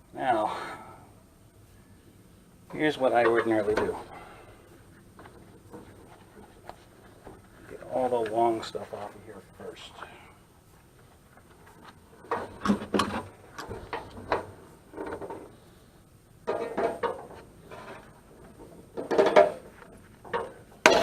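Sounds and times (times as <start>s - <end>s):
metal parts clattering and clinking: 18.9s - 19.6s.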